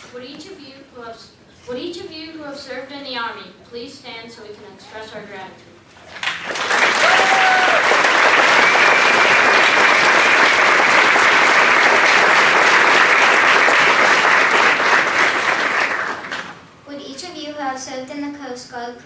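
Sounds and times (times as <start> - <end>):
audience applauding: 6.0 - 16.7.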